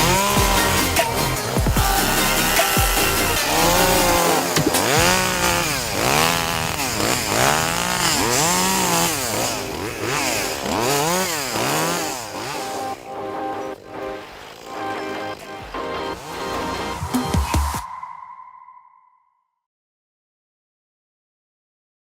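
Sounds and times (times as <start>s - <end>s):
chainsaw engine revving: 0.0s - 17.8s.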